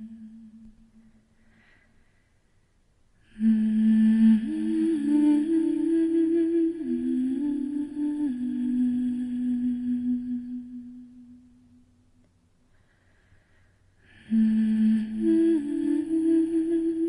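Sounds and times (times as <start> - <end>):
woman humming: 0.0 - 0.9, 14.1 - 17.0.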